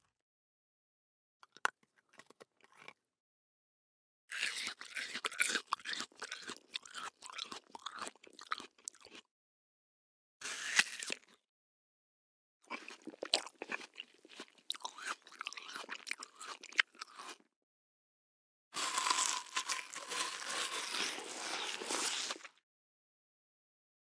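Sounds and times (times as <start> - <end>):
person chewing crunchy food: 1.5 - 3.0, 4.3 - 9.3, 10.5 - 11.4, 12.6 - 17.5, 18.8 - 22.6.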